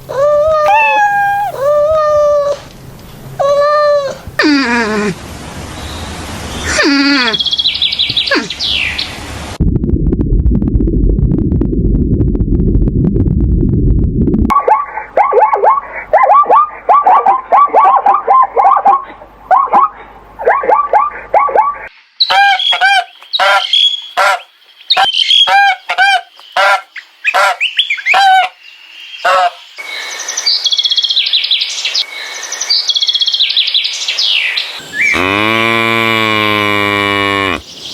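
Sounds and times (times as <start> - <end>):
animal calls and chirps: 0.0 - 2.6, 6.6 - 9.1, 14.5 - 35.4
high-pitched bird chirping: 0.1 - 2.5, 20.6 - 28.5
low rumbling noise with crackles: 9.2 - 14.5
loud honking bird calls: 22.2 - 28.6.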